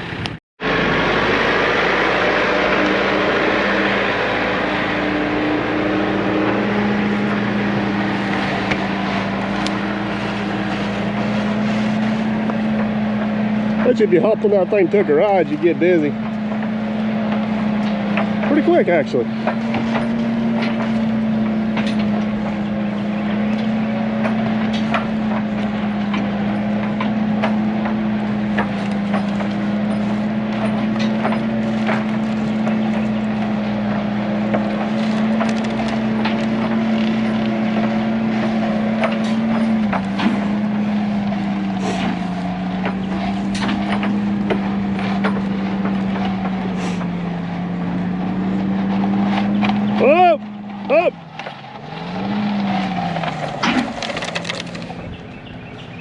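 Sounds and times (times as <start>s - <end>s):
excavator diesel engine running: 0.0s - 56.0s
metal clanks and knocks: 4.2s - 55.6s.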